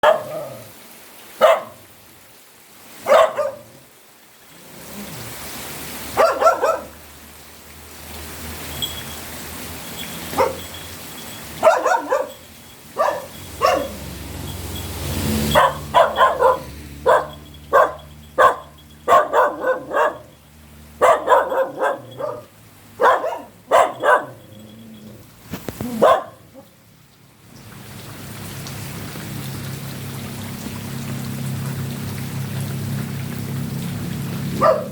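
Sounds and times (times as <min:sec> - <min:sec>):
dog barking: 0:00.0 - 0:00.7, 0:01.4 - 0:01.9, 0:03.0 - 0:03.8, 0:06.1 - 0:07.0, 0:10.3 - 0:10.8, 0:11.5 - 0:14.2, 0:15.3 - 0:20.4, 0:21.0 - 0:24.5, 0:25.8 - 0:26.8, 0:34.6 - 0:34.9.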